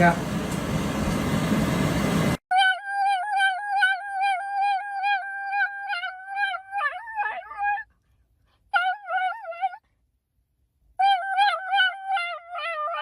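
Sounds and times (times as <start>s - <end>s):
dog howling: 2.5s - 7.9s, 8.8s - 9.8s, 11.0s - 13.0s.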